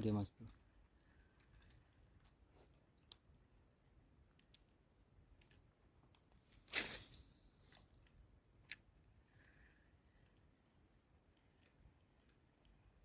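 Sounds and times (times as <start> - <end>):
water splash: 6.7 - 7.6.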